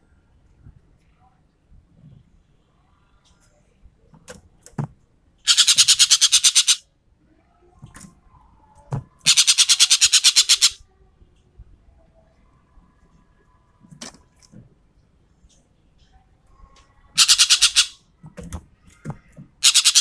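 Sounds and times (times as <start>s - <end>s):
bird rattling bursts: 5.5s - 6.8s, 9.3s - 10.8s, 17.2s - 18.0s, 19.6s - 20.0s.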